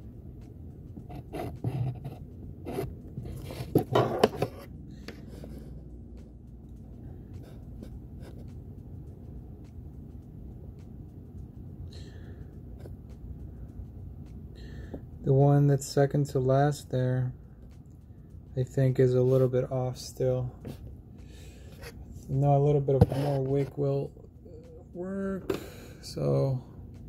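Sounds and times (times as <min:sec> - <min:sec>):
steady low hum: 0:00.0 - 0:27.0
soldering scraping noises: 0:18.6 - 0:20.9, 0:21.6 - 0:24.1.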